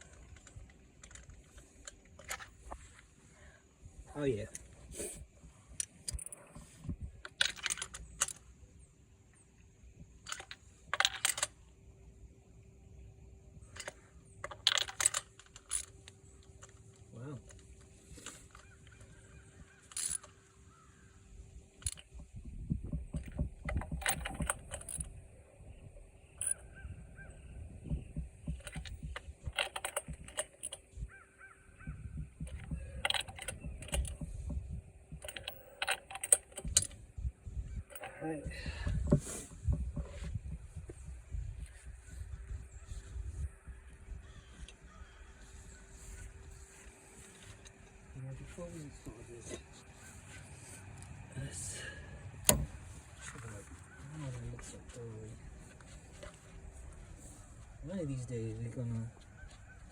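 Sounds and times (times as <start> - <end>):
tools and small parts clinking: 0.0 - 3.1, 5.7 - 8.6, 10.0 - 11.8, 13.6 - 20.7, 21.4 - 31.2, 31.8 - 41.9, 51.8 - 54.0
bird chirping: 24.2 - 29.5
metallic clinks of tools: 35.1 - 37.0, 37.8 - 38.2.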